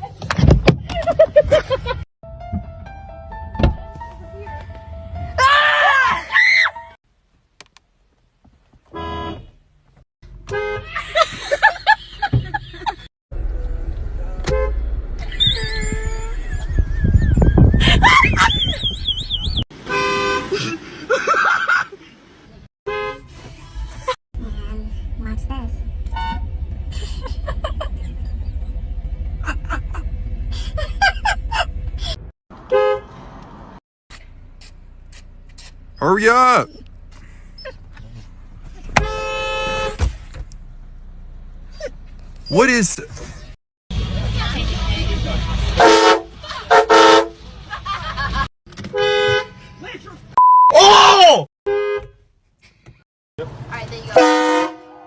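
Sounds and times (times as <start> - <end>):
people's startled cries: 5.4 - 6.8
car horn honks: 8.9 - 9.5, 10.4 - 11.0, 14.4 - 14.8, 19.8 - 20.5, 22.9 - 23.4, 32.6 - 33.2, 39.0 - 40.1, 45.8 - 47.4, 48.8 - 49.9, 51.7 - 52.3, 54.1 - 55.0.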